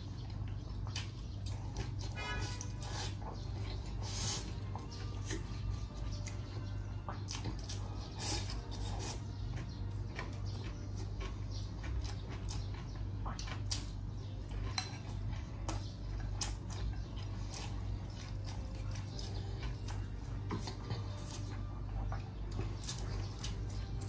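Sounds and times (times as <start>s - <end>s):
steady low hum: 0.0s - 24.0s
utensils clinking against dishes: 1.0s - 6.4s, 13.6s - 23.6s.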